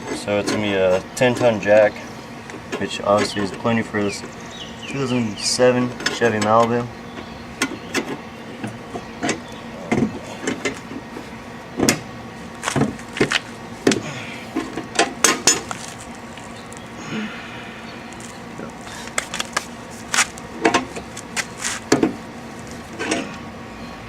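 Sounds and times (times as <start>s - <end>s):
car jack clicking and clanking: 0.0s - 1.9s, 5.5s - 11.2s, 11.8s - 16.2s, 20.2s - 22.2s.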